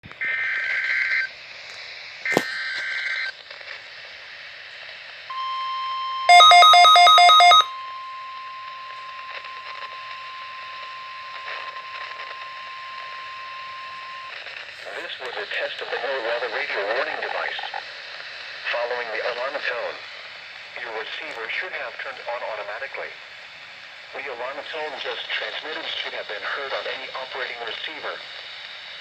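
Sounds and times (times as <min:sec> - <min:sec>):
rapid loud beeping: 0:05.3 - 0:14.3.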